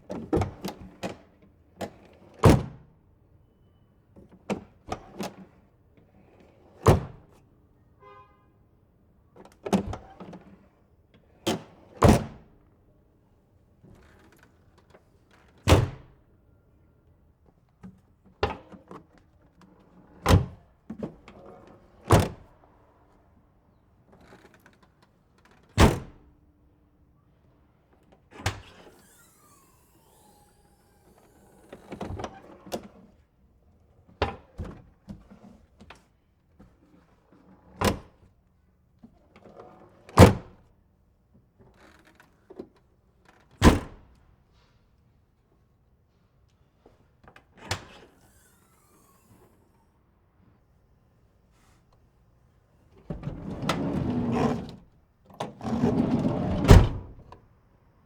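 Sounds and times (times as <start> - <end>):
van door slamming: 55.6 - 57.3.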